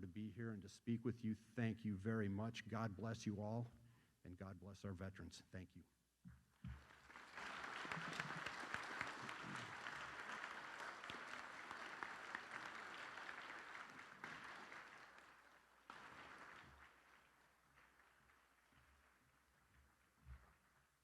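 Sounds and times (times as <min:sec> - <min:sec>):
audience applauding: 0:06.7 - 0:20.8.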